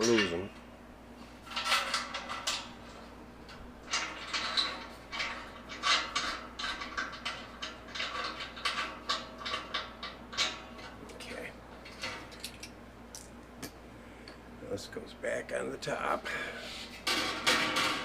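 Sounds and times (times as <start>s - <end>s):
metal parts clinking and scraping: 1.4s - 13.3s.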